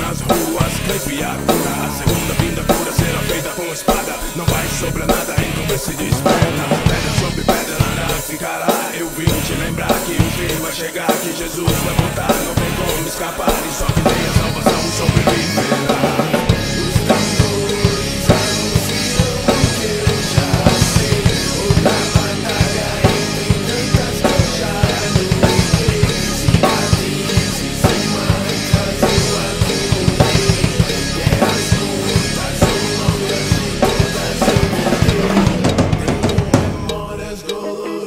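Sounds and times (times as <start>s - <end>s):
instrumental rap beat: 0.0s - 38.0s.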